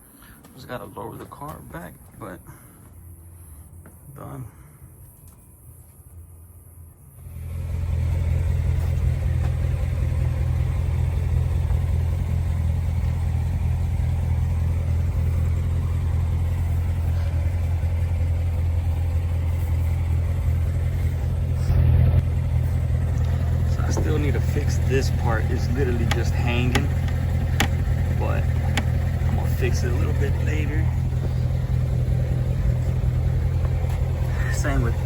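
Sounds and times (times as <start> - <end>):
car engine idling: 7.0 - 35.0.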